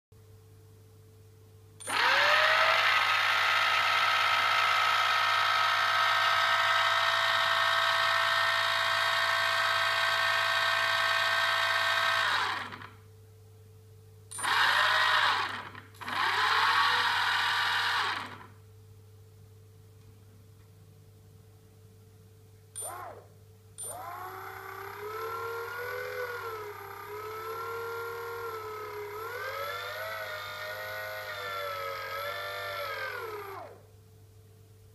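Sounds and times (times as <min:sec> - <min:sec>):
electric motor whining: 0:01.8 - 0:12.9, 0:14.4 - 0:18.5, 0:23.9 - 0:33.8
motor rattling: 0:01.8 - 0:13.0, 0:14.4 - 0:18.5, 0:23.9 - 0:33.8.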